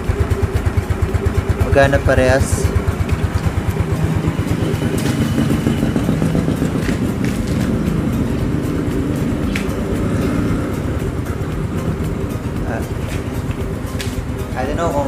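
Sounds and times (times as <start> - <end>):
scooter engine idling: 0.0 - 15.0.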